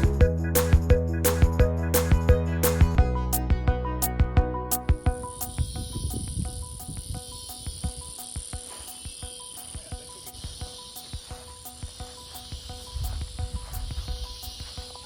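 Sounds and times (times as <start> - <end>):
background music with steady beat: 0.0 - 15.0
high-pitched insect drone: 5.2 - 15.0.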